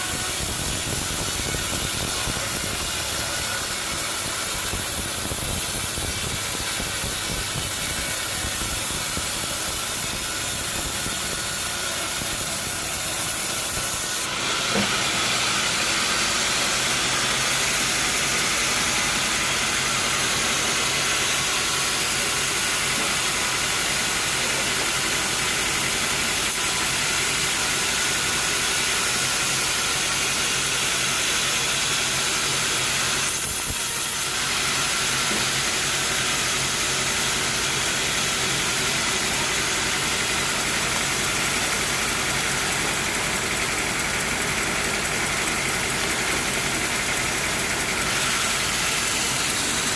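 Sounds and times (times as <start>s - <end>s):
saw cutting timber: 0.0s - 49.9s
motor hum: 41.0s - 49.9s.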